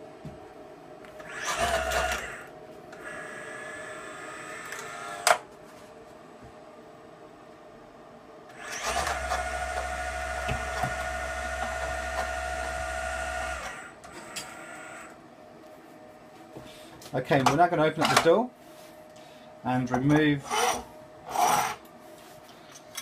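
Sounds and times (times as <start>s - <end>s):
electric motor whining: 1.2s - 5.4s, 8.6s - 15.2s.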